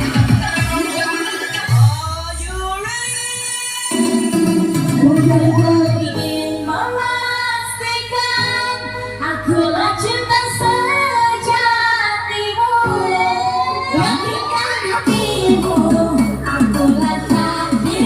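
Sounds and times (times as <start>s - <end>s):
steady bass backing: 4.2s - 12.3s, 13.0s - 18.0s
woman singing with vibrato: 5.0s - 18.0s.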